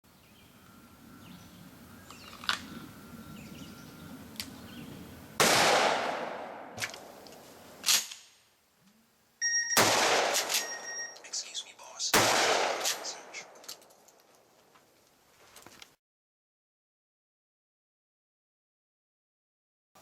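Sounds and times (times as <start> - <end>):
sharp gunshot cracks: 5.4 - 7.2, 9.8 - 10.8, 12.1 - 13.6
shotgun blast: 5.4 - 7.2, 9.8 - 10.9, 12.1 - 13.6.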